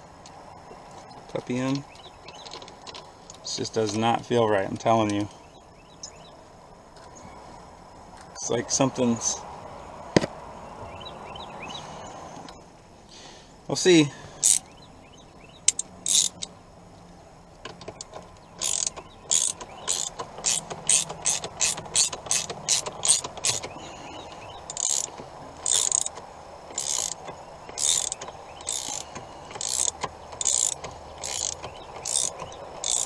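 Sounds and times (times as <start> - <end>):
ratchet wrench clicking: 14.4 - 14.6, 15.7 - 16.5, 17.8 - 23.8, 24.7 - 33.0.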